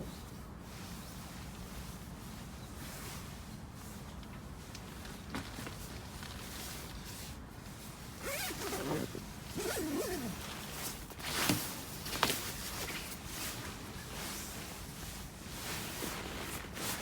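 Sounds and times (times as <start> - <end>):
zipper being pulled: 8.2 - 11.5.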